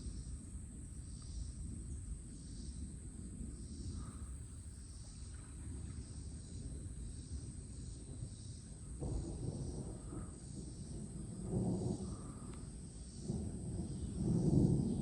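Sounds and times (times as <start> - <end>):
wind buffeting microphone: 5.4 - 15.0
insects calling: 7.8 - 15.0.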